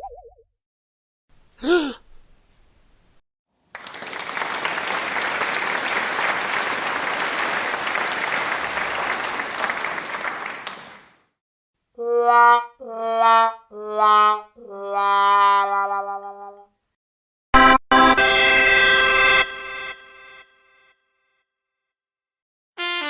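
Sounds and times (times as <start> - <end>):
person gasping: 1.6 - 2.1
audience applause: 3.7 - 11.3.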